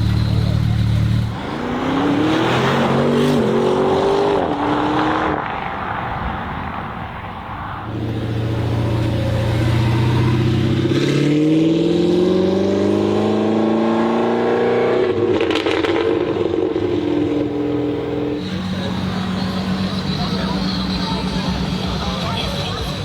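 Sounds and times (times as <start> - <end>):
sports car engine accelerating: 0.0 - 5.8, 7.9 - 23.0
exhaust crackle: 4.3 - 11.4, 14.2 - 23.0.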